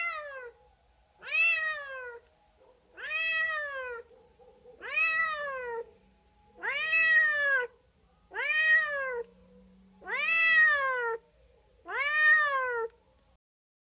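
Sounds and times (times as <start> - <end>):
cat meowing: 0.0 - 0.6, 1.2 - 2.3, 3.0 - 4.1, 4.8 - 5.9, 6.6 - 9.3, 10.0 - 11.2, 11.9 - 13.0.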